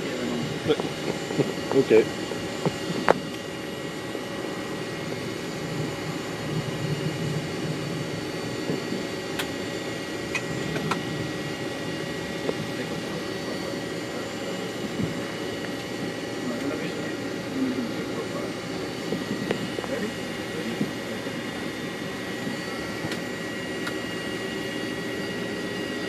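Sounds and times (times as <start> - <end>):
jet engine takeoff roar: 0.0 - 26.0.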